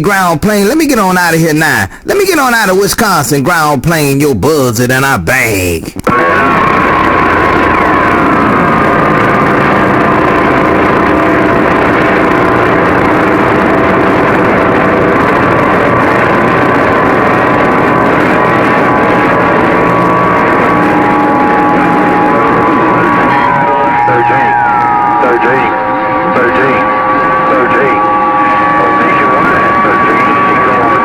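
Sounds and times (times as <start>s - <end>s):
radio static: 0.0s - 31.0s
steady whistling tones: 20.4s - 31.0s.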